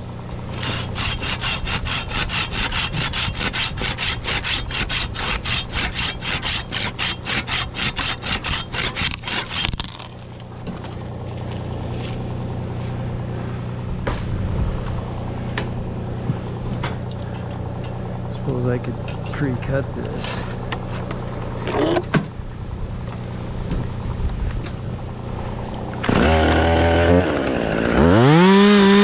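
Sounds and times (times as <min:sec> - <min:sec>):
steady low hum: 0:00.0 - 0:28.1
handsaw cutting wood: 0:00.5 - 0:12.2, 0:26.1 - 0:29.0.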